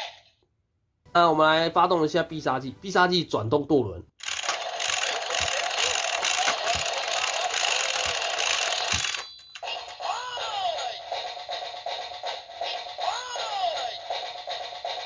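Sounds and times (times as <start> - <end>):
toy gun electronic hissing whirring: 4.2 - 10.2.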